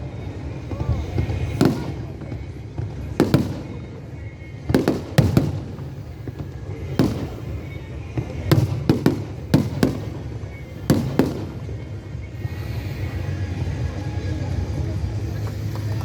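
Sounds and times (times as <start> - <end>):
firework shells bursting: 1.0 - 12.1.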